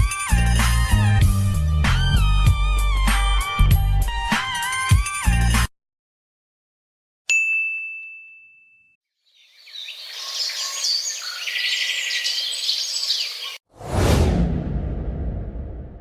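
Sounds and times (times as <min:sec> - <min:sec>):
bright ding: 0:07.3 - 0:09.0
birds chirping: 0:09.2 - 0:13.6.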